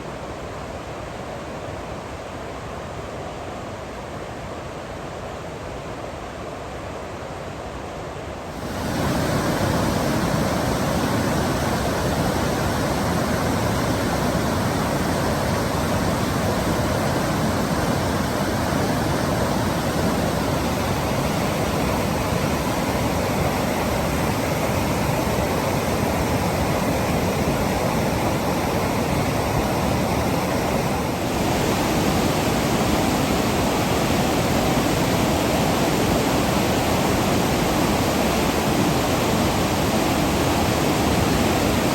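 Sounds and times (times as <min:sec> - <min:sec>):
waterfall rushing: 0:08.5 - 0:41.9.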